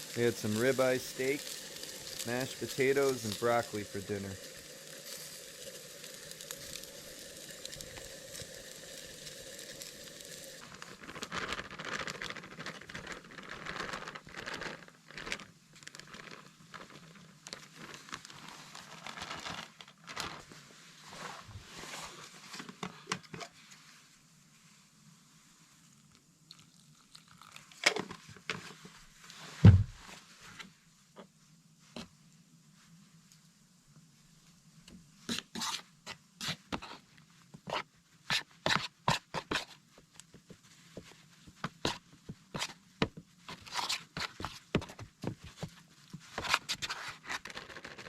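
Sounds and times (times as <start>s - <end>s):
food sizzling in a frying pan: 0.0s - 11.0s
crackling and rustling: 0.0s - 24.8s, 35.2s - 48.0s
heavy thump: 29.6s - 30.0s.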